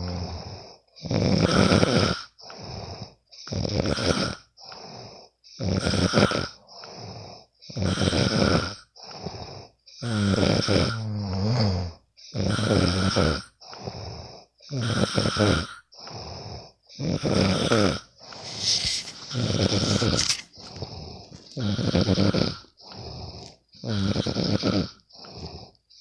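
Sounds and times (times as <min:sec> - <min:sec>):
quiet breathing: 0:00.0 - 0:01.1, 0:02.2 - 0:03.5, 0:04.4 - 0:05.6, 0:06.5 - 0:07.8, 0:08.8 - 0:10.0, 0:13.5 - 0:14.8, 0:15.8 - 0:23.9, 0:24.9 - 0:26.0
person snoring: 0:00.0 - 0:26.0.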